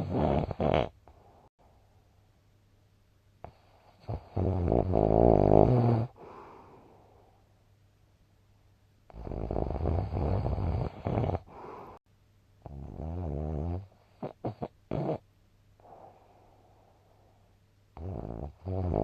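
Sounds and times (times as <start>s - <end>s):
person snoring: 0.0s - 1.2s, 3.5s - 6.9s, 9.1s - 12.0s, 18.0s - 19.0s
quiet breath: 1.0s - 2.2s, 6.1s - 7.6s, 11.4s - 12.1s, 15.8s - 17.7s.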